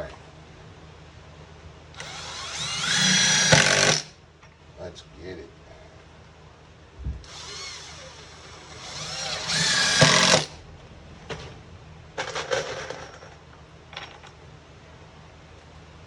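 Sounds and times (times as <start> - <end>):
power driver driving screw: 2.0 - 4.1, 7.3 - 10.6.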